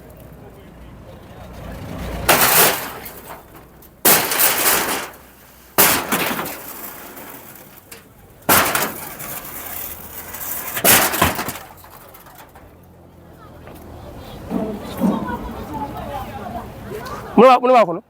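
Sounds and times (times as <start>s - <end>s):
loud demolition crashes: 1.4s - 13.0s.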